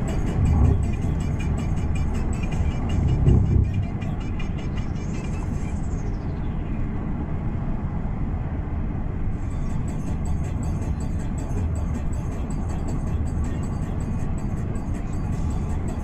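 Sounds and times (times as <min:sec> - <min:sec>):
music with a beat: 0:00.0 - 0:05.4, 0:09.4 - 0:16.0
low rumble of moving vehicle: 0:00.0 - 0:16.0.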